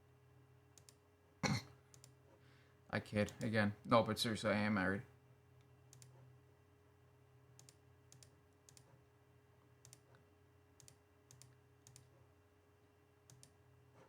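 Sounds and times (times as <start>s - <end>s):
computer mouse clicks: 0.8s - 1.0s, 1.9s - 2.2s, 5.6s - 6.3s, 7.6s - 9.0s, 9.8s - 10.2s, 10.8s - 12.2s, 13.2s - 13.6s.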